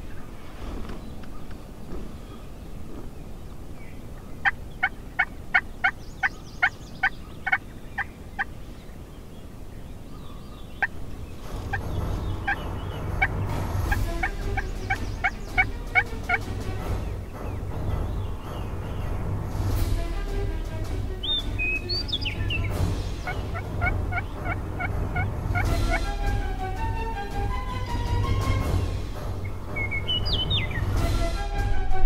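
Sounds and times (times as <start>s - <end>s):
turkey yelping: 4.4s - 8.5s, 14.2s - 16.4s, 23.2s - 28.3s
low rumble: 11.1s - 32.0s.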